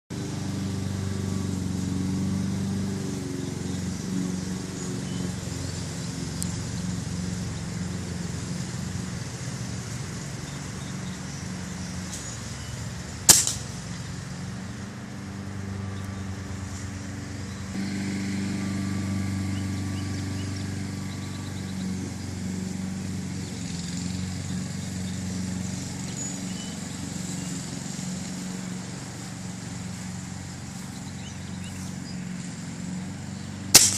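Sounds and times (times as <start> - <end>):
low mechanical hum: 0.1 - 33.9
gunshot: 13.3 - 13.6.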